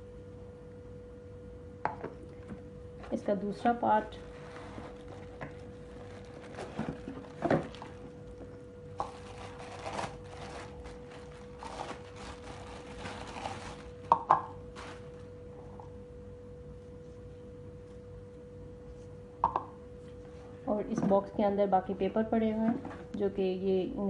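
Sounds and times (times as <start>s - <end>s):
rustling: 4.2s - 15.3s.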